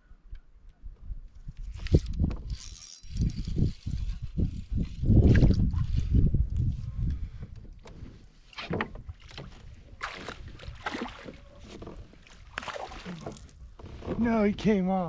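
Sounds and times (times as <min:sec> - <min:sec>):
wind rumble on microphone: 0:00.6 - 0:08.3
water splashing: 0:09.1 - 0:13.6.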